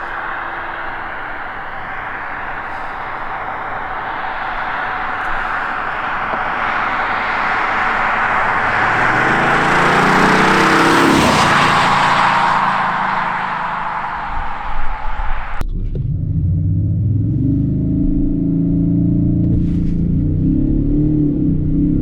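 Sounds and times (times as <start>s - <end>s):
car driving past: 0.0s - 15.6s.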